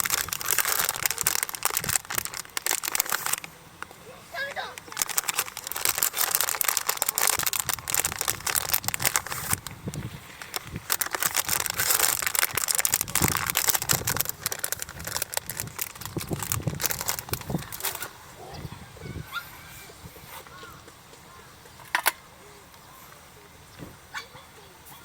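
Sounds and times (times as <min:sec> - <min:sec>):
crinkling and rustling: 0:00.0 - 0:18.2.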